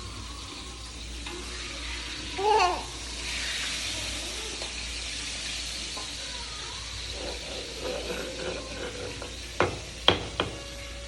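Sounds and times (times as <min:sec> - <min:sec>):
food sizzling in a pan: 0:00.0 - 0:11.0
small child babbling: 0:02.4 - 0:03.0, 0:06.2 - 0:07.0.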